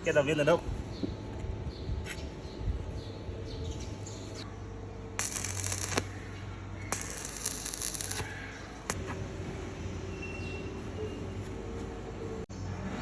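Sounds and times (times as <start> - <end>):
hissing bursts: 5.2 - 9.0.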